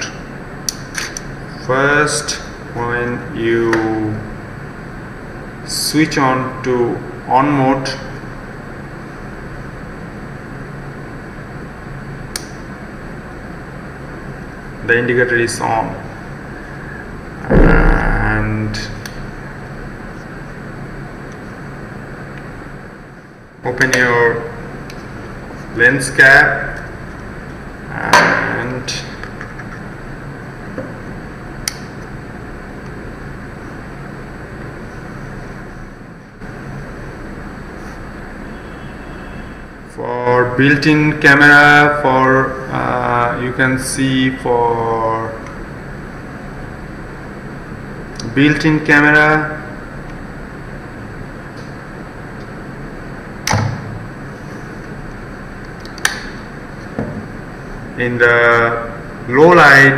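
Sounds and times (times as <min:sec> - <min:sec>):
background hum and hiss: 0:00.0 - 0:59.9
low hum: 0:16.6 - 0:21.3
sharp click: 0:55.8 - 0:56.4.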